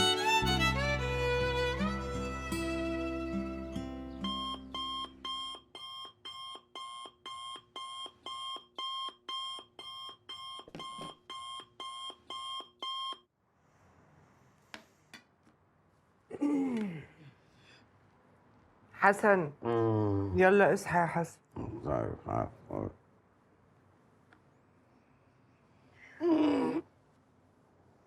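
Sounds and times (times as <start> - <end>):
violin music: 0.0 - 4.7
alarm clock beeping: 4.2 - 13.2.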